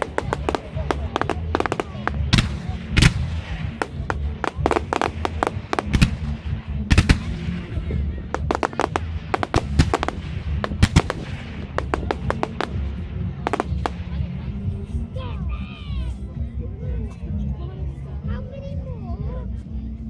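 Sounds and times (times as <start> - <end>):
fireworks bangs: 0.0 - 14.3
bass-heavy music: 0.0 - 20.0.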